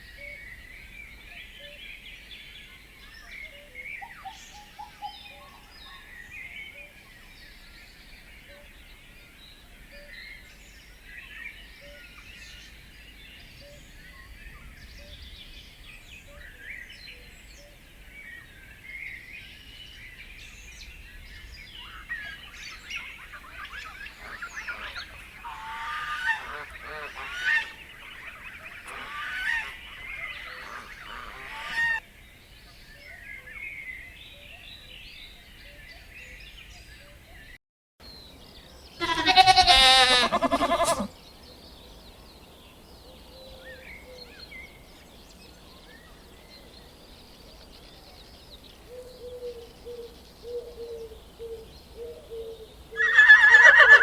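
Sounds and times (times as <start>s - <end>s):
poultry honking calls: 24.1s - 32.0s, 39.0s - 41.1s, 53.0s - 54.0s.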